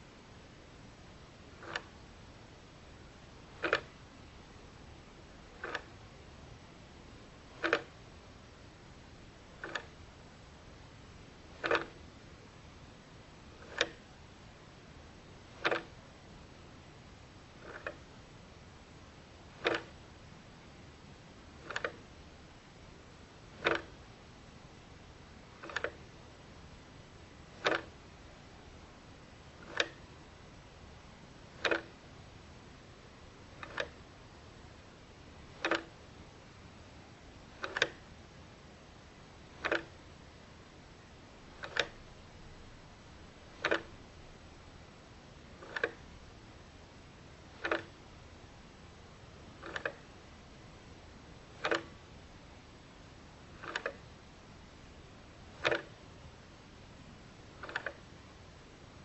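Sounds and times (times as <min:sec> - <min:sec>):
faint steady hiss: 0:00.0 - 0:59.0
clock ticking: 0:03.6 - 0:03.9, 0:07.6 - 0:08.0, 0:09.6 - 0:09.9, 0:11.6 - 0:12.0, 0:13.6 - 0:14.0, 0:27.6 - 0:27.9, 0:29.6 - 0:30.0, 0:31.6 - 0:32.0, 0:33.6 - 0:34.0, 0:37.6 - 0:38.1, 0:41.5 - 0:42.0, 0:43.5 - 0:43.9, 0:45.6 - 0:46.0, 0:47.5 - 0:47.9.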